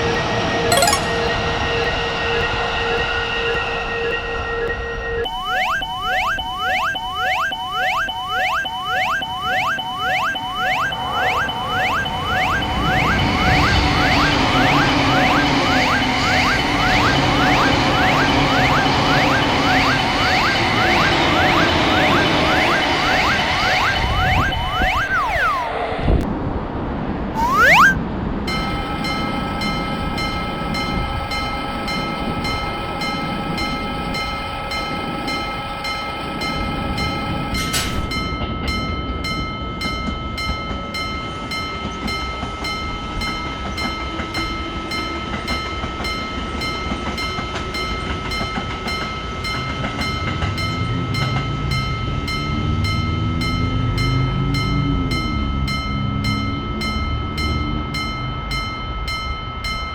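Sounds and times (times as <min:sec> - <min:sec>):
level crossing bell ringing: 0:00.7 - 0:01.5
train running noise: 0:40.9 - 0:53.0.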